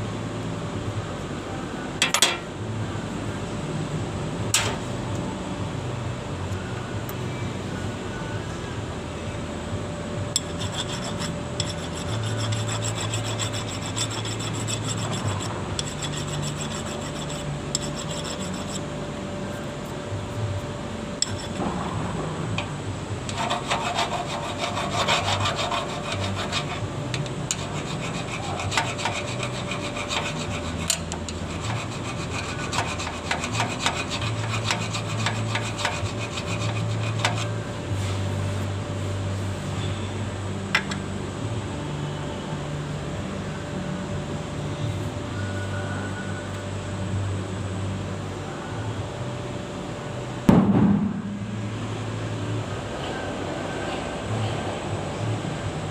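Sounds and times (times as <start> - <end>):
electrical hum: 0.0 - 55.9
scraping on machine parts: 23.3 - 38.7.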